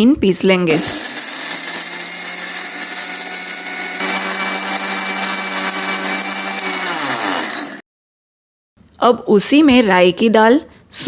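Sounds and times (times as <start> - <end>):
electric mixer grinder grinding spices: 0.7 - 7.8.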